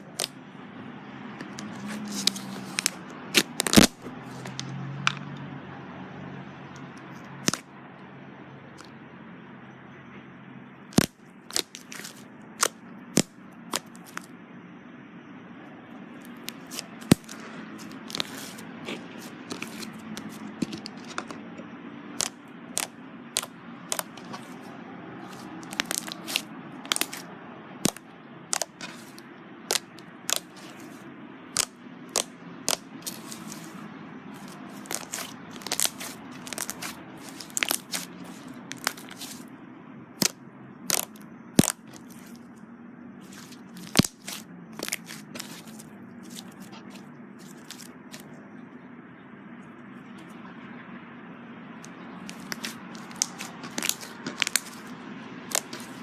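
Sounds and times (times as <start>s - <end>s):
slime crackling and popping: 1.7s - 4.0s, 25.3s - 27.2s, 27.8s - 30.9s, 31.6s - 33.7s, 34.4s - 39.4s, 40.2s - 42.3s, 43.2s - 48.2s, 52.3s - 54.8s, 55.5s - 56.0s.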